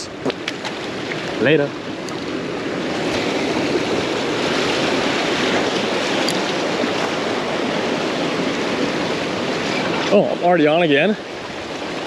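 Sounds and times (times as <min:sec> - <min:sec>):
ocean surf washing ashore: 0:00.0 - 0:12.0.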